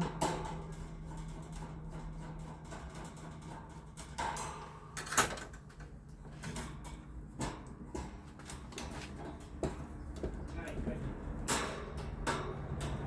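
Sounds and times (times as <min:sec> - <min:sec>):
clicks and knocks of fan parts: 0:00.0 - 0:13.0.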